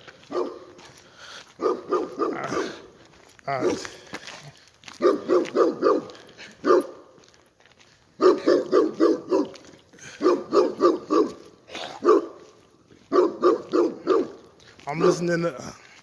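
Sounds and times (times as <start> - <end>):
dogs barking: 0.2 - 0.8, 1.6 - 2.9, 4.9 - 7.2, 8.2 - 15.3.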